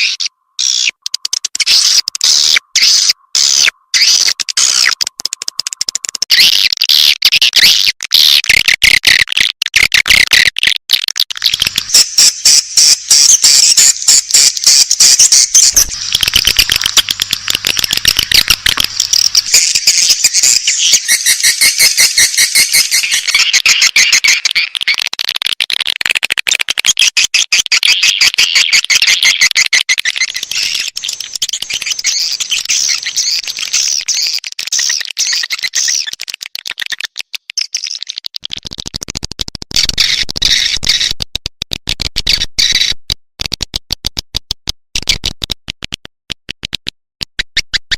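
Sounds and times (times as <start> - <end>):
swiftlets twittering: 11.4 - 24.8.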